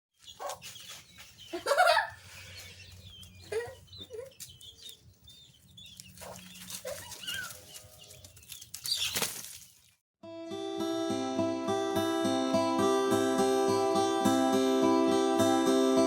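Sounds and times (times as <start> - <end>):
roosters clucking: 0.2 - 9.4
wings flapping: 6.2 - 9.9
strummed acoustic guitar music: 10.3 - 16.0.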